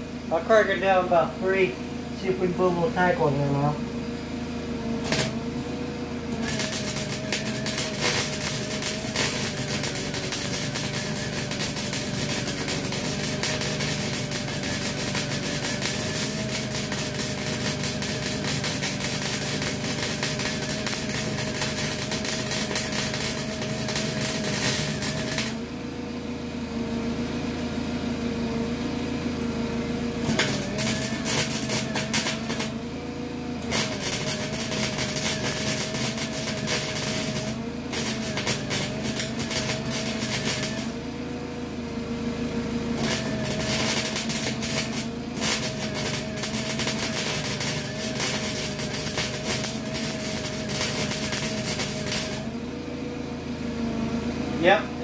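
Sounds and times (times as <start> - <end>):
steady hum: 0.0 - 25.8
welding arc crackling: 0.2 - 25.8, 29.4 - 41.3, 42.9 - 52.8.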